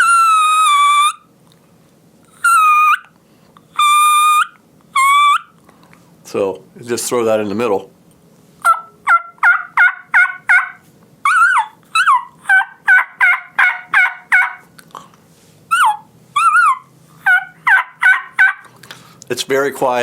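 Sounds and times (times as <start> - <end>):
turkey yelps on mouth call: 0.0 - 1.3, 2.3 - 3.1, 3.8 - 5.6, 8.6 - 14.7, 15.7 - 18.7.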